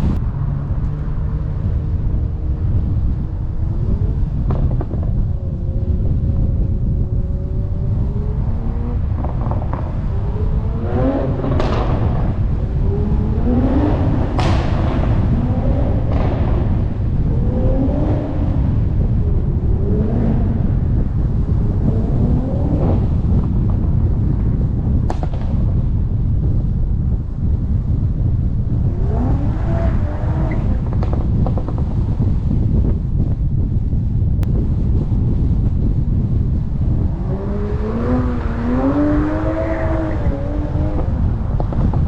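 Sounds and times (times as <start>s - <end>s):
car engine revving: 0.0s - 23.8s, 28.5s - 32.0s, 36.8s - 42.0s
exhaust pops: 3.4s - 6.8s, 8.5s - 26.8s, 28.4s - 42.0s.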